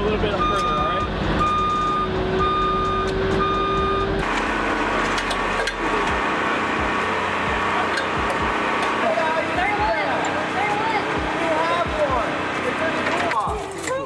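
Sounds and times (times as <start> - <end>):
engine and machinery running: 0.0 - 14.0
backup alarm beeping: 0.4 - 4.1.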